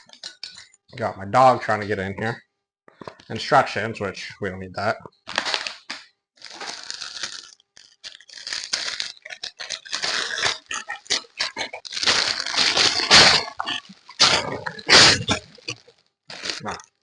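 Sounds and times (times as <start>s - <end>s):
dog snorting and snuffling: 10.0s - 15.8s.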